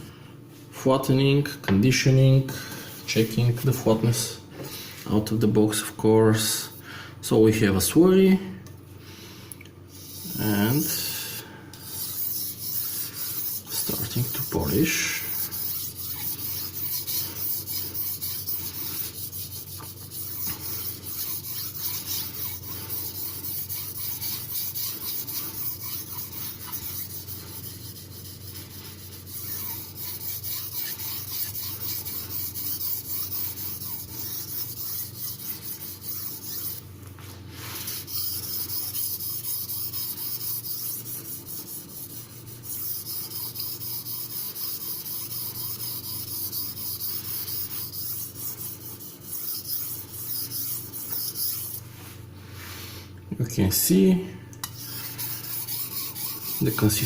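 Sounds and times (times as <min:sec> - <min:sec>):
knife rubbing on whetstone: 0:09.9 - 0:11.0, 0:11.8 - 0:53.0, 0:54.6 - 0:57.0.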